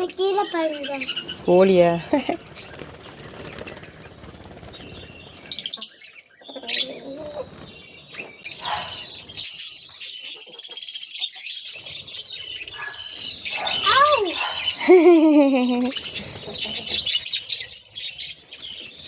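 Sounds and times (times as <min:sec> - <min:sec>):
small birds chirping: 0:00.0 - 0:19.0
wings fluttering: 0:00.2 - 0:05.8, 0:06.9 - 0:09.3.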